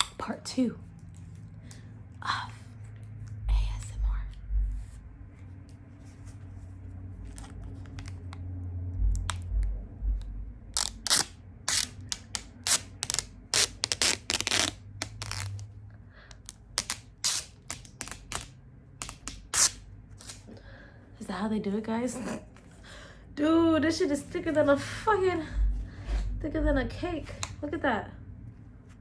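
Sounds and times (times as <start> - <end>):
low bumps: 3.0 - 11.5, 23.6 - 27.7.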